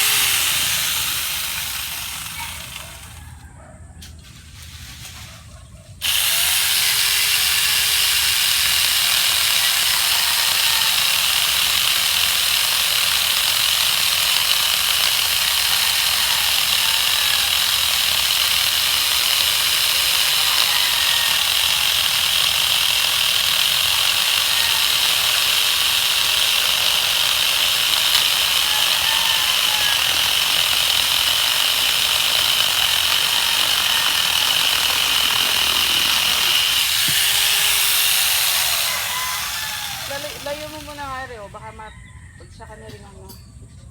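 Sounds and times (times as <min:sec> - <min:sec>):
chainsaw cutting wood: 0:00.0 - 0:03.4, 0:06.0 - 0:41.6.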